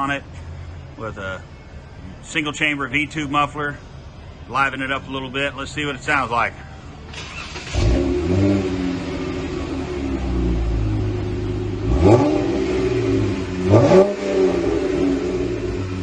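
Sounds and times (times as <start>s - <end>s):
car engine idling and revving: 6.6s - 16.0s.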